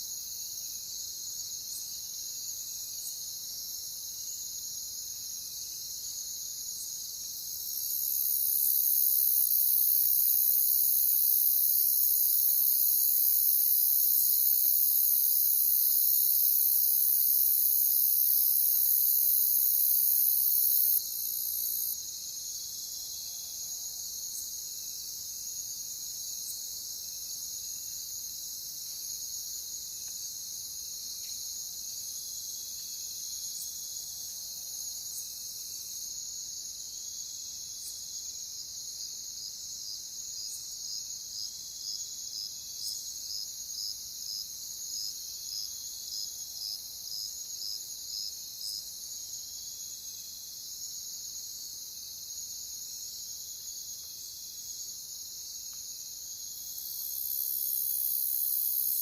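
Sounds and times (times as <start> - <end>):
crickets chirping: 0.0 - 59.0
high-pitched insect trill: 5.1 - 59.0.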